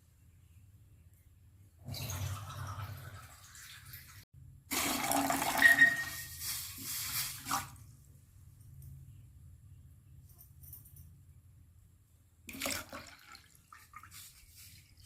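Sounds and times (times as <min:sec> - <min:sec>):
water pouring into a pot: 0:01.9 - 0:07.7, 0:12.5 - 0:14.1.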